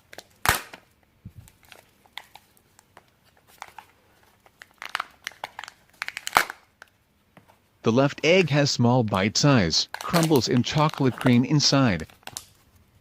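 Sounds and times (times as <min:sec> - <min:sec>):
plastic packaging crinkling: 0:00.0 - 0:07.0, 0:09.8 - 0:12.8.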